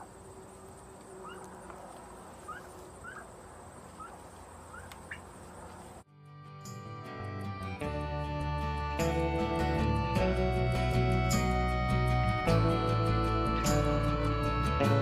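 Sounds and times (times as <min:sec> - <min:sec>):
guitar music: 0:06.1 - 0:15.0.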